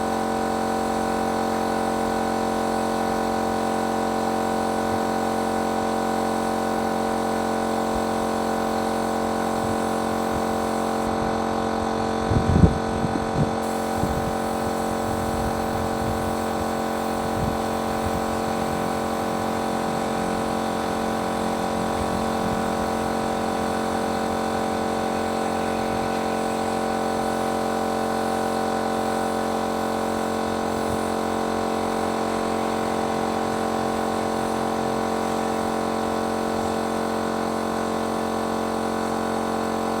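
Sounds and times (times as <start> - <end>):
paint sprayer motor humming: 0.0 - 39.9.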